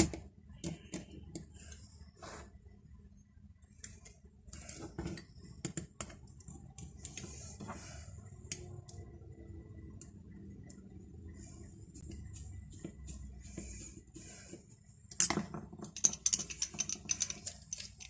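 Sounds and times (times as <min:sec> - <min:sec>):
metal wrench clicking and clinking: 0:15.9 - 0:18.0.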